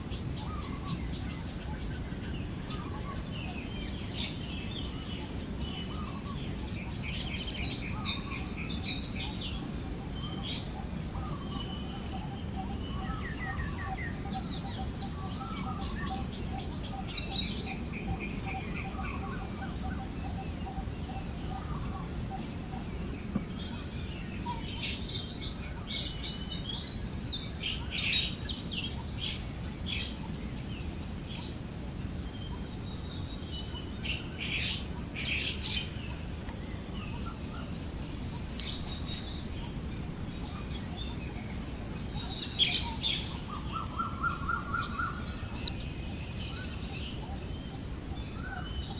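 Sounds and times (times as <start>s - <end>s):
forest birds chirping: 0.0s - 48.9s
soft breeze: 0.0s - 48.9s
high insect trill: 26.8s - 48.9s.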